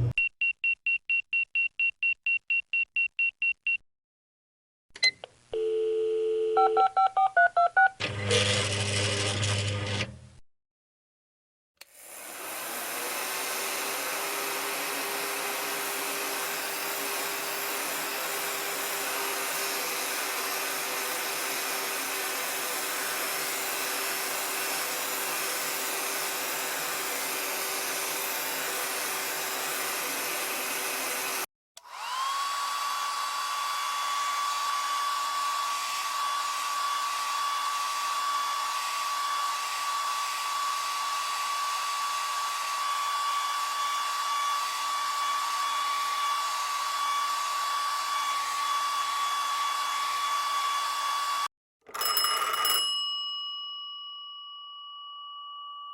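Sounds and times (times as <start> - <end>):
hair dryer blowing hum: 11.8 - 51.5.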